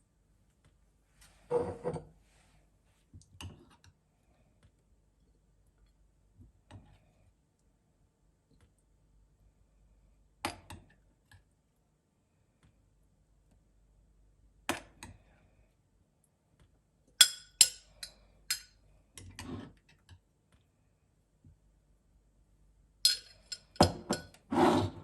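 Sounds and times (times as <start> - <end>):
soft scrape: 24.5 - 25.0.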